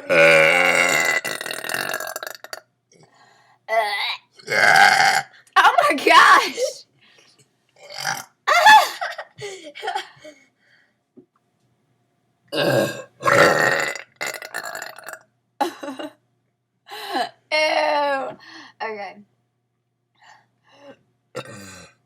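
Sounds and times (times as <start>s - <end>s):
person burping: 0.0s - 2.6s, 4.0s - 5.3s, 7.8s - 8.4s, 12.5s - 15.2s, 21.4s - 22.0s.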